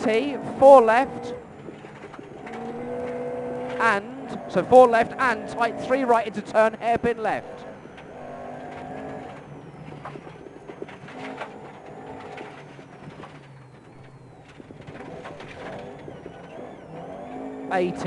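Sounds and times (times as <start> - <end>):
car engine at low revs: 0.0 - 18.0
clicks and knocks: 1.4 - 3.9.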